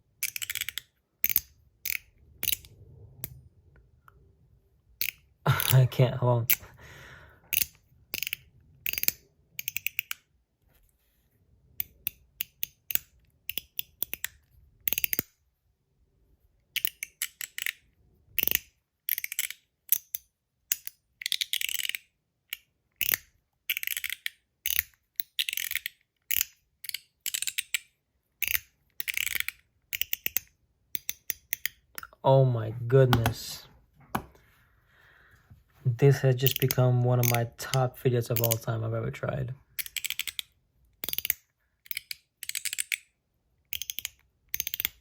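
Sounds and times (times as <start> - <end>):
metal slider fidget clicking: 0.2 - 3.4, 7.5 - 10.2, 11.8 - 15.3, 18.4 - 31.8, 36.5 - 37.4, 39.8 - 43.0, 43.7 - 45.0.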